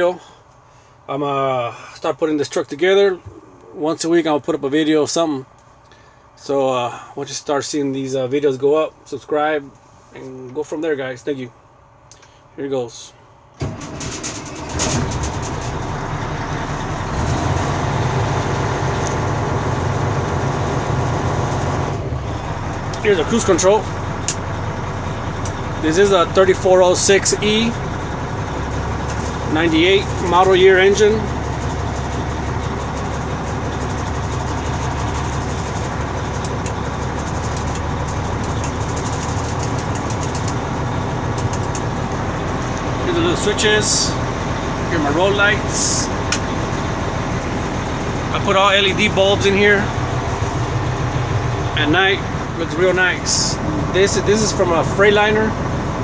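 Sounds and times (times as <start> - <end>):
diesel engine starting: 13.5 - 56.0.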